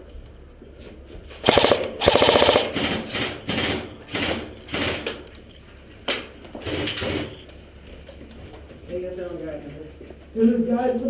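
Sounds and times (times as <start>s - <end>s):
airsoft guns firing bursts: 1.4s - 5.1s.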